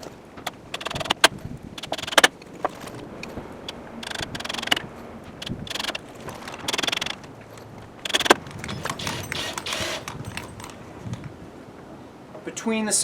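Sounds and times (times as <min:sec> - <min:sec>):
cordless driver driving screws: 0:00.0 - 0:02.3, 0:03.7 - 0:04.8, 0:05.4 - 0:07.2, 0:08.0 - 0:10.8.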